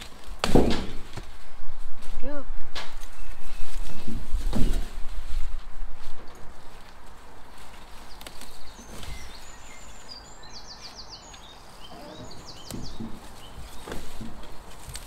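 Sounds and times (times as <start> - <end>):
soft knocks and rustles of plants: 0.0 - 15.0
songbird singing: 2.9 - 4.6, 7.4 - 14.8.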